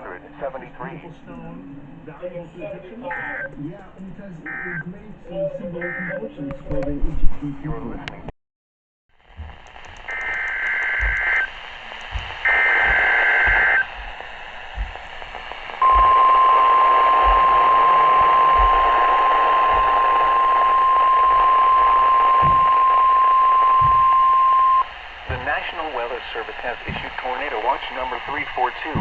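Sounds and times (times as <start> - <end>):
radio hiss: 0.0 - 8.3, 9.3 - 29.0
steady warning alarm tone: 3.1 - 3.5, 4.4 - 6.3, 10.0 - 27.0
screechy digital data tones: 12.4 - 13.9.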